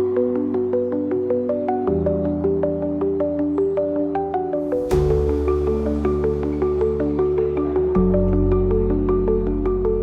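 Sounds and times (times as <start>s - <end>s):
synth music with mallet notes: 0.0s - 10.0s.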